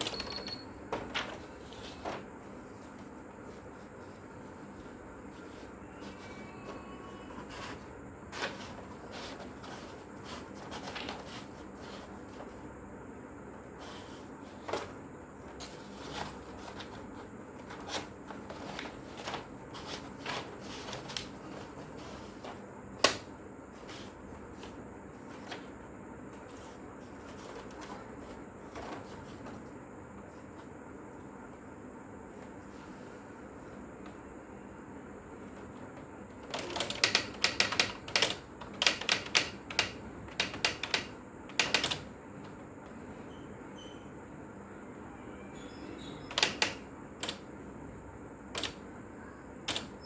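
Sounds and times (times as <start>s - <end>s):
typewriter background whine: 0.0s - 2.3s, 36.4s - 42.2s, 45.6s - 47.5s, 48.5s - 48.8s, 49.6s - 50.0s
typewriter clicking and clacking: 36.4s - 42.1s, 46.3s - 47.4s, 48.5s - 48.8s, 49.7s - 50.0s.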